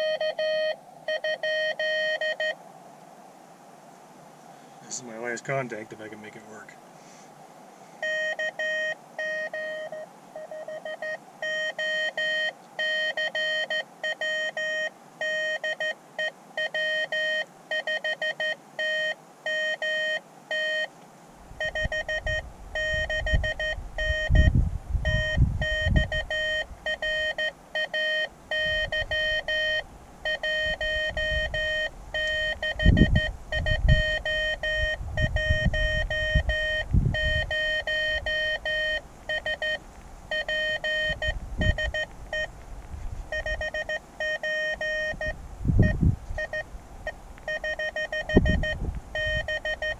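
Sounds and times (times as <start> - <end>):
morse code tone: 0.0 - 2.6, 8.0 - 20.9, 21.6 - 42.5, 43.3 - 46.7, 47.5 - 49.9
low rumbling bursts: 21.4 - 27.2, 28.4 - 44.0, 44.8 - 49.9.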